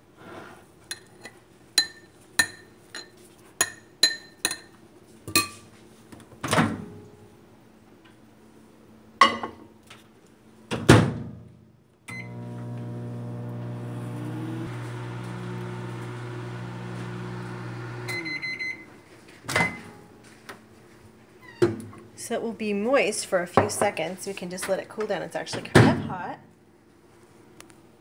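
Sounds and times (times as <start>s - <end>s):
microwave humming: 12.1s - 20.1s
short beeps: 18.1s - 18.9s.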